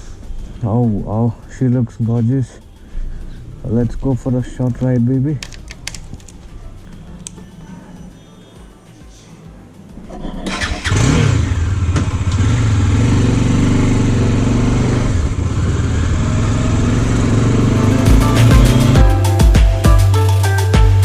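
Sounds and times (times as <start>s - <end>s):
motorcycle engine starting and revving: 10.0s - 19.2s.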